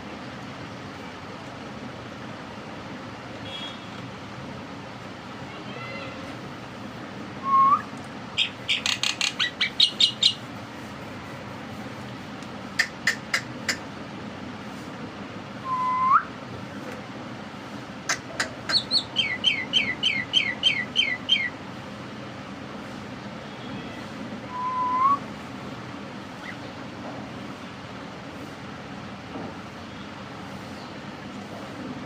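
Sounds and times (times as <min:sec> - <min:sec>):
bird chirps: 0:08.4 - 0:10.4, 0:18.6 - 0:21.6
bird whistle sliding upward: 0:15.7 - 0:16.3, 0:24.5 - 0:25.2.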